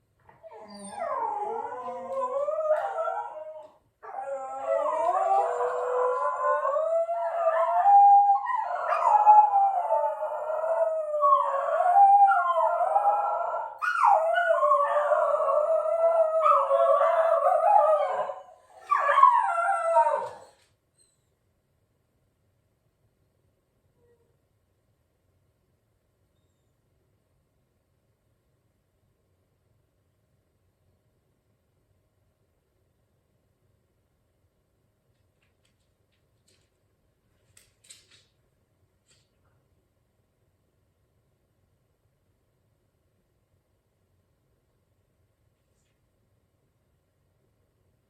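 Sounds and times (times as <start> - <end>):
dog howling: 0.4 - 20.6.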